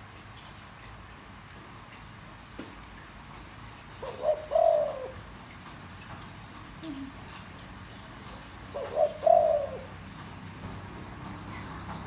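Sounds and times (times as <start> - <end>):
dove cooing: 4.0 - 5.2, 8.3 - 10.1.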